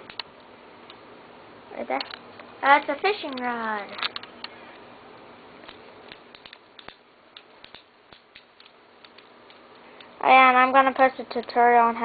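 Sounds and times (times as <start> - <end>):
light clicks of small objects handled: 5.6 - 10.2.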